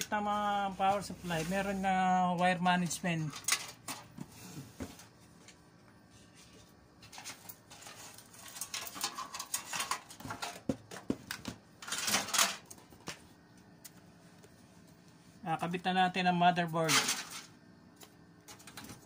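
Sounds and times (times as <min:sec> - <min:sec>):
scraping rustle: 0:00.8 - 0:02.2, 0:06.1 - 0:10.5
computer parts clicking and rattling: 0:11.3 - 0:12.8.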